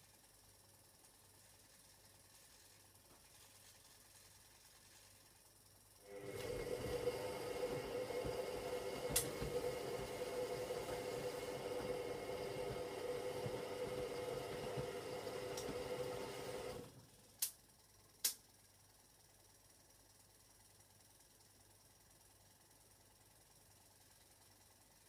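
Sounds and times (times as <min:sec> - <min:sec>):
washing machine motor whine: 0:06.0 - 0:17.3
laundry thudding in drum: 0:06.5 - 0:15.9.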